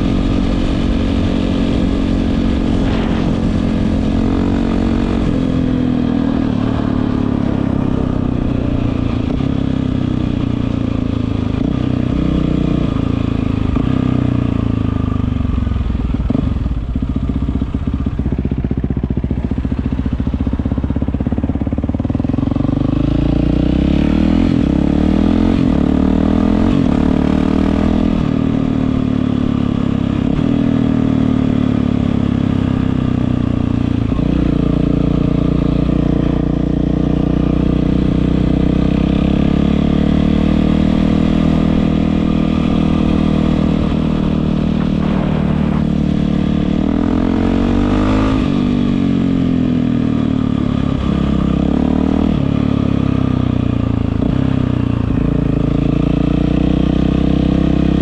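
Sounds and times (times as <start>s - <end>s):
dirt bike engine revving: 0.0s - 14.3s, 22.6s - 53.5s.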